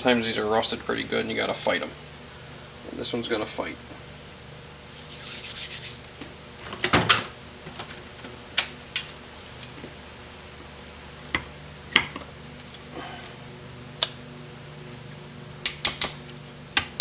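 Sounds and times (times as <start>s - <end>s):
metal scraping and rubbing: 4.9s - 6.1s.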